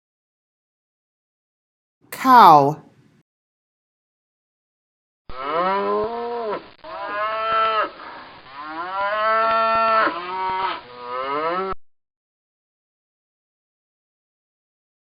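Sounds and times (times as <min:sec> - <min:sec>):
cow mooing: 0:11.1 - 0:11.7.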